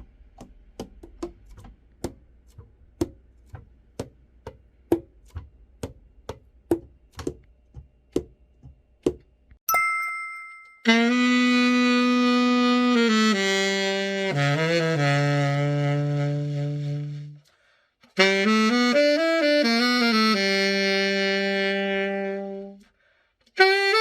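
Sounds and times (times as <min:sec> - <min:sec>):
tenor saxophone playing: 0:10.9 - 0:22.9, 0:23.5 - 0:24.0.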